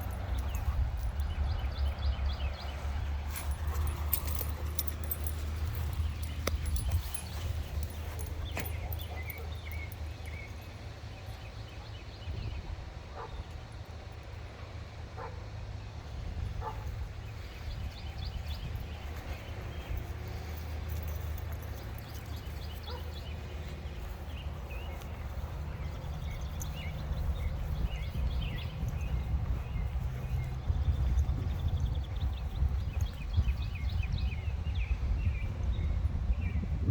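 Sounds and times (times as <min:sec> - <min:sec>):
dogs playing: 0:00.0 - 0:11.9, 0:16.5 - 0:33.5.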